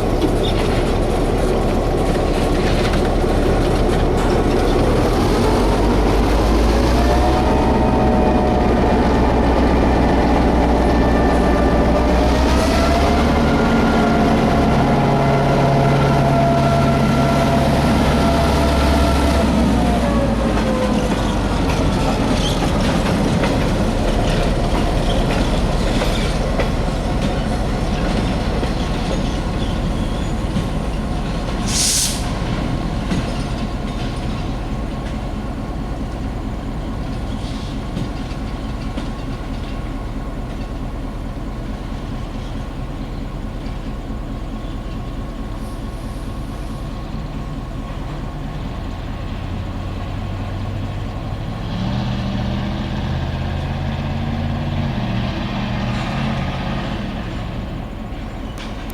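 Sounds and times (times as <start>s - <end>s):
diesel locomotive engine running: 0.0s - 58.9s
freight cars clacking on rails: 0.0s - 58.9s
brief hiss: 31.6s - 32.4s.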